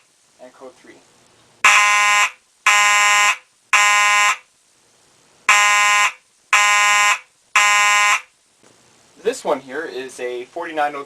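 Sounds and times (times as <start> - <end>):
fire alarm horn blasts: 1.6 - 4.5, 5.5 - 8.3.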